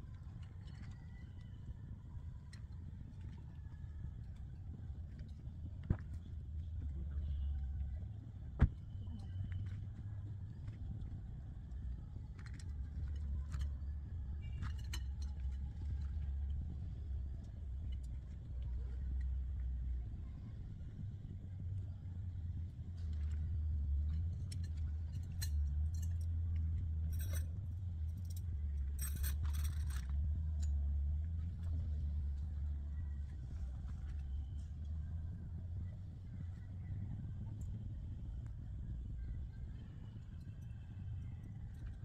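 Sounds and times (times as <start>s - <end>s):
low rumble: 0.0s - 42.0s
metallic clinks and jingles: 11.8s - 16.8s, 23.0s - 34.9s.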